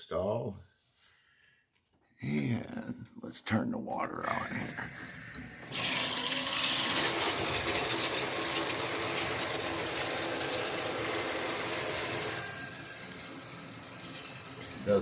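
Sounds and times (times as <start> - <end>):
shower spraying water: 5.7 - 15.0.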